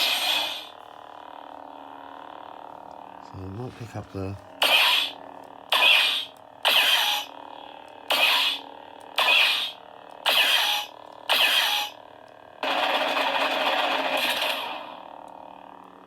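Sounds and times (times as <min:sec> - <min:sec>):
sharp lightsaber effect: 0:00.0 - 0:00.8, 0:04.6 - 0:07.4, 0:08.1 - 0:12.0, 0:12.6 - 0:15.0
lightsaber hum: 0:00.0 - 0:16.0
loud continuous lightsaber sound: 0:00.0 - 0:16.0.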